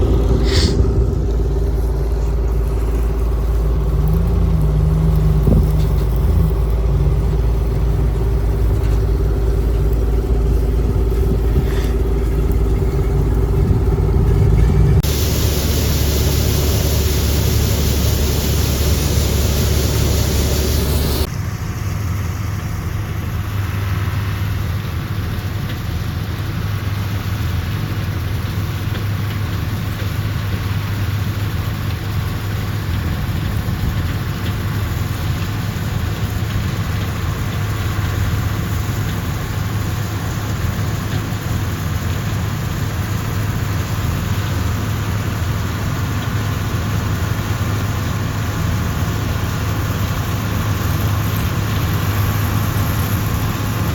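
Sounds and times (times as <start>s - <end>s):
loud even hiss: 0.0s - 3.3s, 15.0s - 21.3s
combine engine droning: 0.0s - 53.9s.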